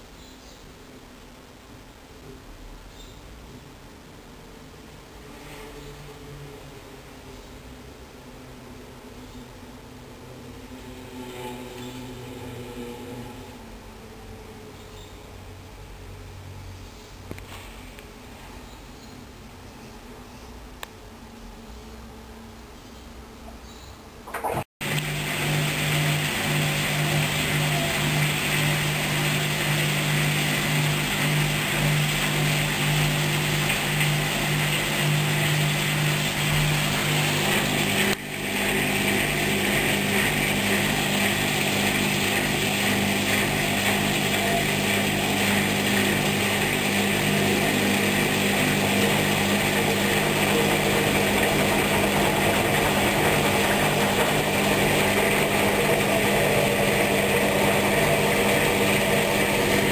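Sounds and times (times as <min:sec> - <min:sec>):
washing machine humming: 0:24.2 - 0:59.9.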